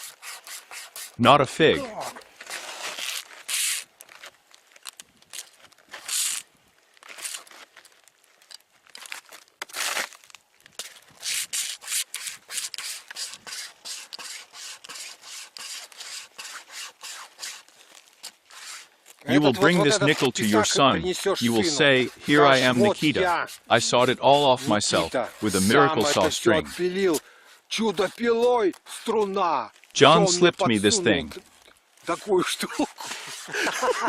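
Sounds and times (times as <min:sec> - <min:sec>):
string saw rasping through wood: 0:00.0 - 0:01.2, 0:11.2 - 0:17.7, 0:18.4 - 0:29.4, 0:32.0 - 0:34.0.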